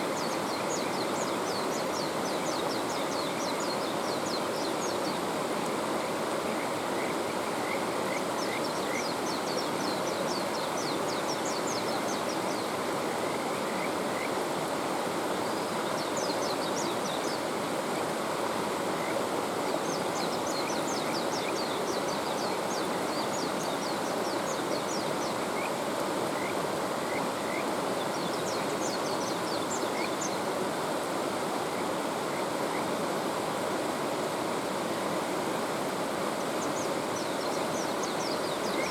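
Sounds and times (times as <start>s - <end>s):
mountain stream flowing: 0.0s - 38.9s
frogs chirping: 6.6s - 9.1s, 22.4s - 27.8s, 28.4s - 30.3s, 36.6s - 38.9s.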